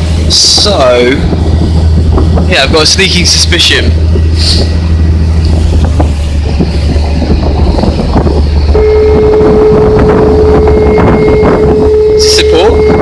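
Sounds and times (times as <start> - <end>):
ferry engine droning: 0.0 - 13.0
rushing water: 0.0 - 13.0
long steady signal beep: 8.7 - 13.0.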